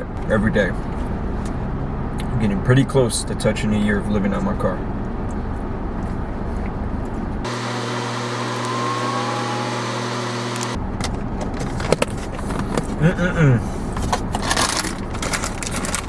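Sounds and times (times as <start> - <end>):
car engine rumble from inside: 0.0 - 7.5, 8.5 - 16.0
multi-tone hum with rising whine: 7.1 - 11.0.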